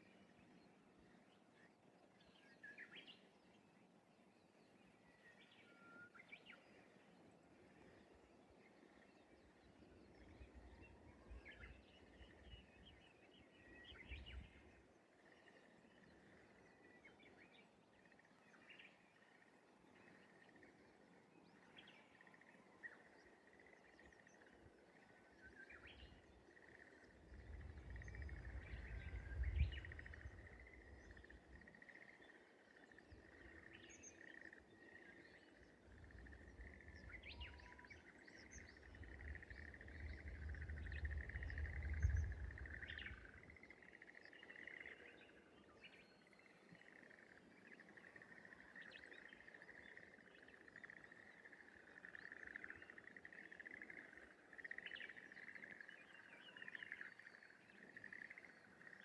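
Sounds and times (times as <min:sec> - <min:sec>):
bird chirps: 0:25.4 - 0:59.0.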